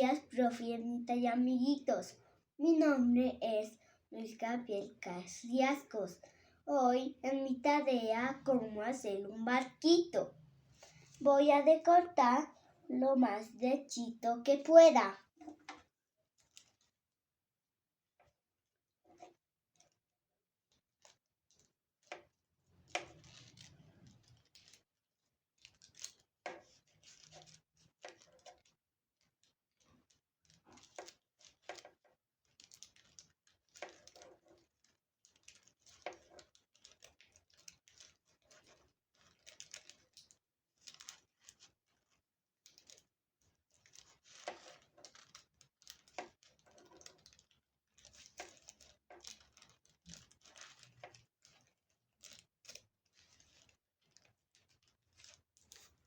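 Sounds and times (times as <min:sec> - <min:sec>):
paper rustling: 0:43.7 - 0:56.0.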